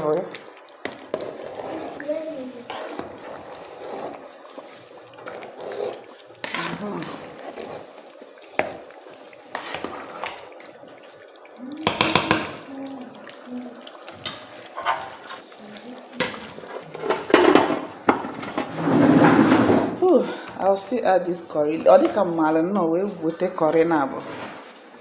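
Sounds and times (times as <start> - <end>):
pots and pans clattering: 11.8 - 12.7, 14.2 - 15.4, 16.2 - 20.0.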